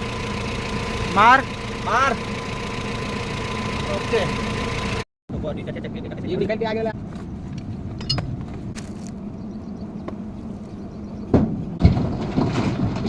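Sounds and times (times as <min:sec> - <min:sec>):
low engine hum: 0:00.0 - 0:12.2
metal clanks and knocks: 0:11.4 - 0:13.0.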